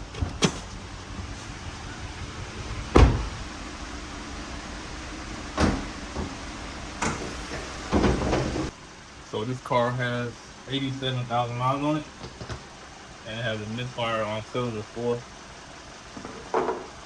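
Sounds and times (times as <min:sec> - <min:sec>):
low steady rumble: 0:00.0 - 0:17.0
loud thump: 0:02.9 - 0:03.4.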